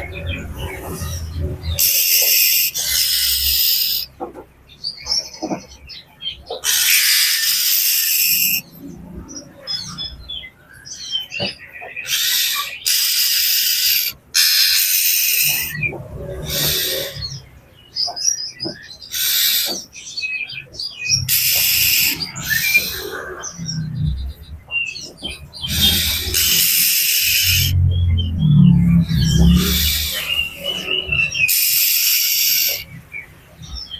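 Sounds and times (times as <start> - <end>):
bird harsh rasping churrs: 0.0 - 4.2, 6.4 - 8.8, 10.9 - 17.5, 18.6 - 33.0
bird chirps and whistles: 1.7 - 4.1, 6.6 - 8.7, 12.0 - 17.4, 18.0 - 23.5, 24.8 - 33.0.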